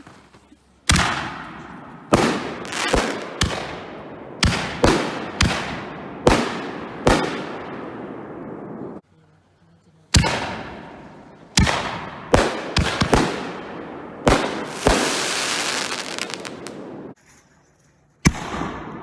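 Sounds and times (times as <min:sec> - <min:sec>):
firework bangs echoing: 0:00.9 - 0:09.0, 0:10.2 - 0:17.2.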